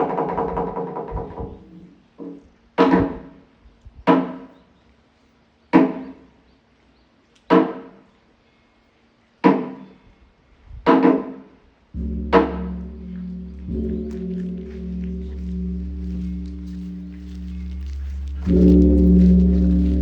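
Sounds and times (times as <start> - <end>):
wooden percussion knocks: 0.0 - 3.3, 12.0 - 20.0.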